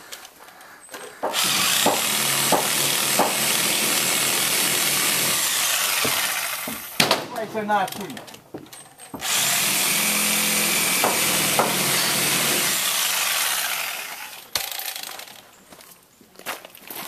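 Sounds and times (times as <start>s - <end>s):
knocks: 1.2s - 3.4s, 11.0s - 11.9s
power saw cutting wood: 1.2s - 7.2s, 9.1s - 14.5s.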